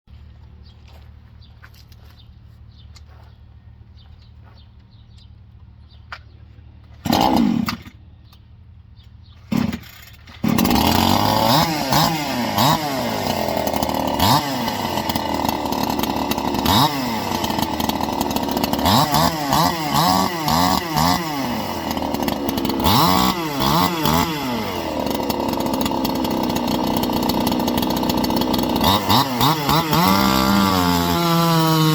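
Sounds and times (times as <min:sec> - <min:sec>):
chainsaw engine revving: 0:07.0 - 0:08.0, 0:09.5 - 0:31.9.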